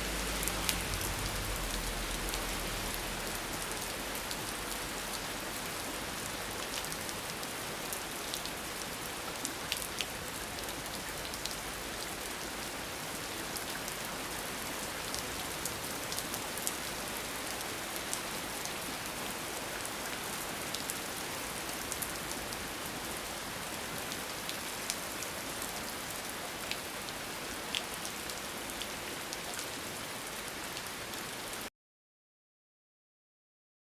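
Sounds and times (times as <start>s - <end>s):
steady rain hiss: 0.0s - 31.6s.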